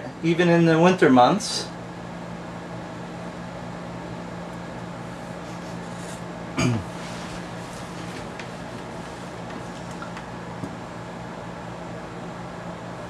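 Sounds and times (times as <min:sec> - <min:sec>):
low room hum: 0:00.0 - 0:13.0
short throat vocal sound: 0:06.6 - 0:06.9.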